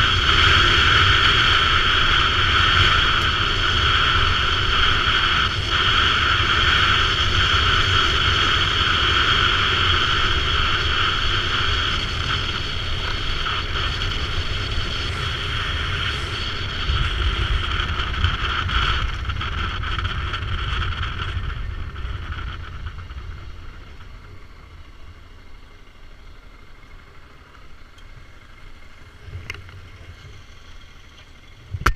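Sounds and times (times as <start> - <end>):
wind rush: 0.0 - 25.6
motorcycle engine running: 0.0 - 31.9.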